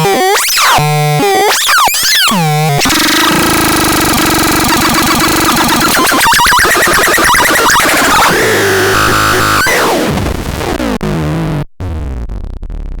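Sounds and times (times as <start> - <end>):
harsh electronic noise: 1.6 - 13.0
squealing synth tones: 2.2 - 10.0
low electronic buzz: 8.1 - 13.0.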